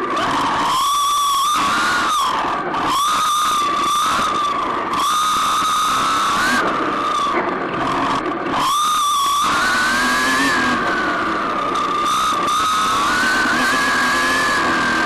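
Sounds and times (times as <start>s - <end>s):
rc car motor whining: 0.0s - 15.0s.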